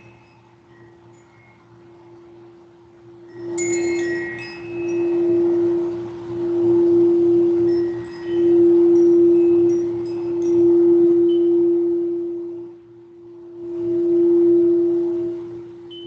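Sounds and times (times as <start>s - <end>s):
singing bowl tone: 0.0s - 16.0s
high chime tinkles: 3.3s - 5.6s, 7.6s - 11.5s.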